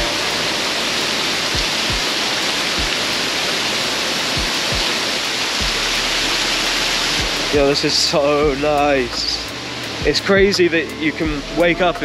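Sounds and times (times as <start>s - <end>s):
soft drum beats in music: 0.0s - 0.5s, 1.6s - 2.2s, 2.8s - 3.2s, 4.3s - 5.0s, 5.6s - 12.0s
waterfall rushing: 0.0s - 12.0s.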